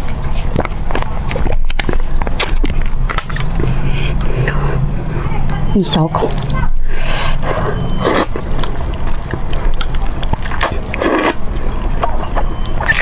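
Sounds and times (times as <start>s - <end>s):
person chewing: 0.0s - 5.6s, 6.3s - 13.0s
steady low rumble: 0.0s - 13.0s
person slurping noodles: 6.9s - 11.8s.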